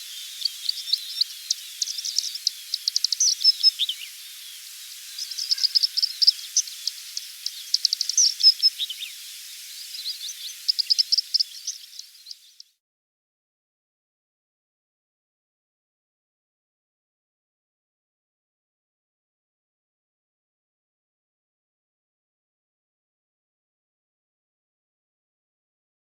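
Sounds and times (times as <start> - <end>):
countryside ambience hiss: 0.0 - 12.8
songbirds chirping and trilling: 0.0 - 12.8.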